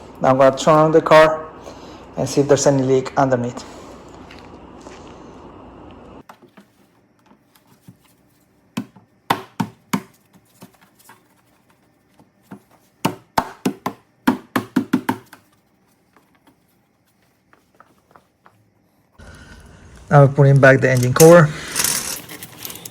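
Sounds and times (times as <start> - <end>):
steady hum: 0.0 - 6.2, 19.2 - 22.2.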